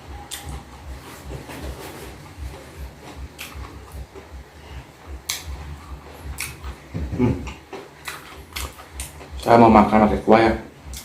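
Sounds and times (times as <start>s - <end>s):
chewing food: 0.2s - 1.4s, 2.2s - 9.5s.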